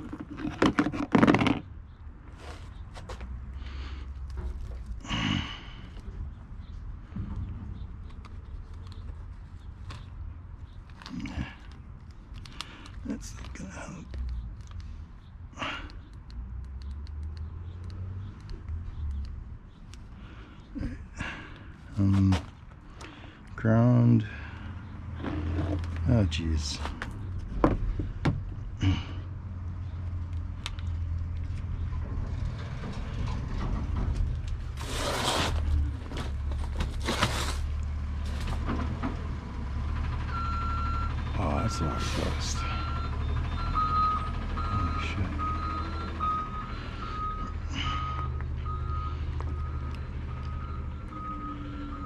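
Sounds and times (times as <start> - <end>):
low engine rumble: 0.0 - 52.0
reversing alarm beeping: 40.3 - 52.0.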